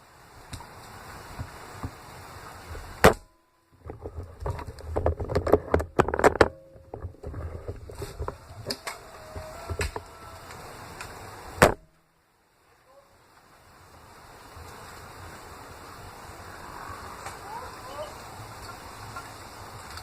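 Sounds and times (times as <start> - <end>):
rustling and scuffing of gear: 3.9 - 11.8.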